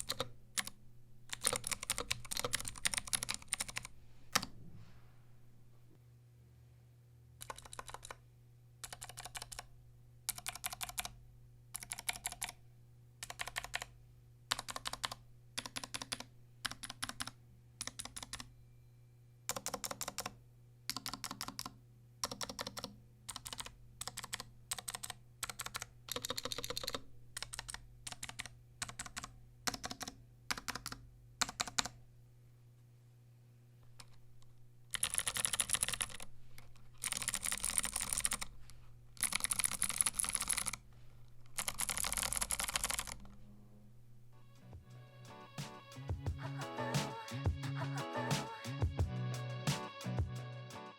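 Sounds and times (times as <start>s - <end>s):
clicky keyboard typing: 0.0s - 4.5s, 7.4s - 8.2s, 8.8s - 9.7s, 10.3s - 12.6s, 13.2s - 13.9s, 14.5s - 18.5s, 19.5s - 32.0s, 34.9s - 38.5s, 39.2s - 40.8s, 41.5s - 43.4s.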